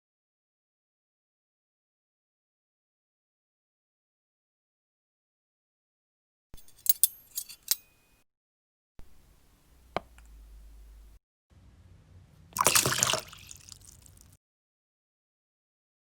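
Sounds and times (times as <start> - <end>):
light clicks and clinks: 6.6 - 8.2
low hum: 9.0 - 13.3.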